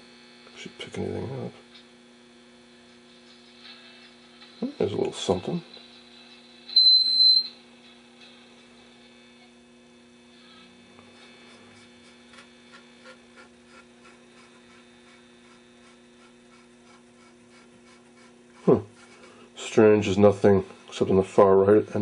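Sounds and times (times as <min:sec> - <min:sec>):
high-pitched feedback whistle: 0:06.7 - 0:07.6
radio loudspeaker hum: 0:07.7 - 0:22.0
faint radio crackles: 0:07.8 - 0:17.3.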